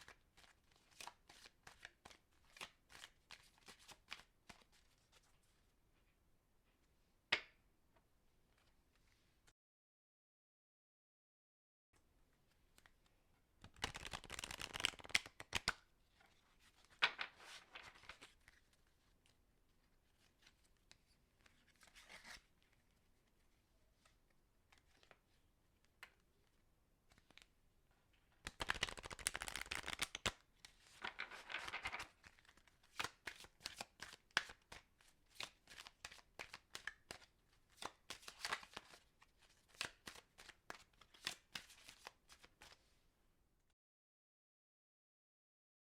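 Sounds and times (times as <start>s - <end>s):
playing cards being shuffled: 13.6s - 15.8s, 16.7s - 18.7s, 28.4s - 34.8s, 35.4s - 42.8s.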